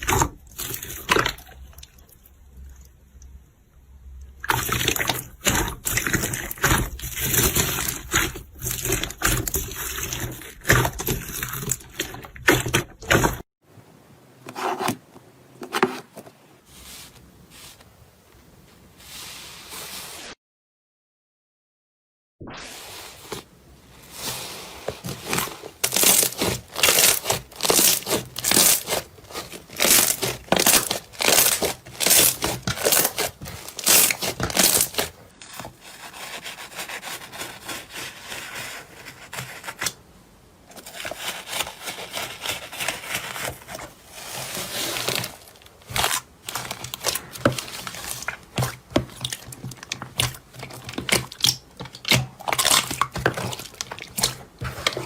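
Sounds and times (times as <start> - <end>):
slime crackling squishes: 4.4 - 13.4, 25.0 - 35.2, 40.9 - 55.0.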